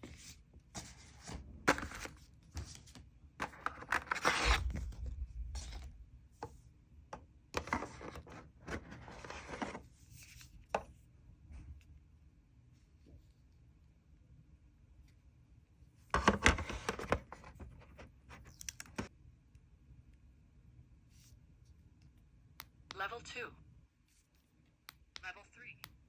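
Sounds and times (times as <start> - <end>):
packaging rustling and scraping: 0.8 - 5.0.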